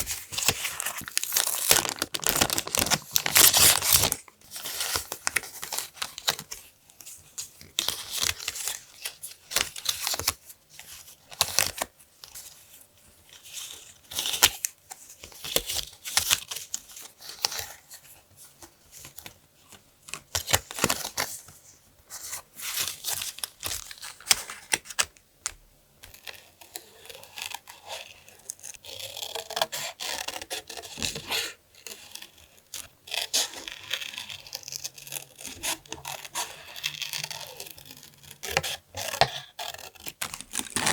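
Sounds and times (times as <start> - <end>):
paper tearing and rustling: 0.0 - 6.4, 26.2 - 40.9
sharp clicks and crinkles: 0.4 - 4.2.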